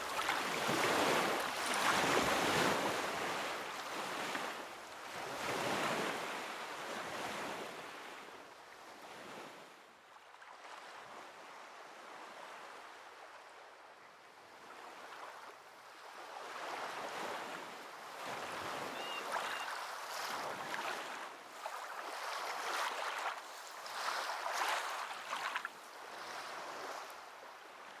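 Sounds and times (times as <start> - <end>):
sea waves breaking on shore: 0.0 - 4.6, 16.8 - 27.2.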